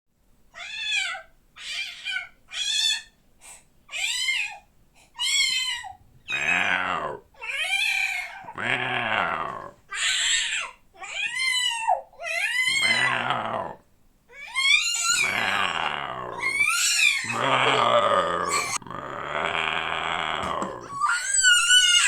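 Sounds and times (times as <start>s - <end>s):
cat meowing: 11.0s - 13.7s, 14.4s - 18.8s
low drawn-out cat calls: 12.5s - 13.8s, 14.6s - 22.0s.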